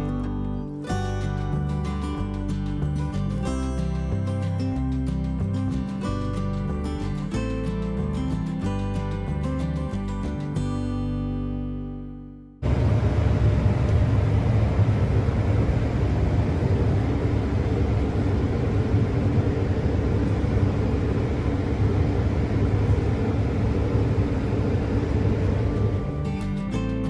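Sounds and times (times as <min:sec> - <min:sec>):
combine harvester drone: 0:12.6 - 0:26.6.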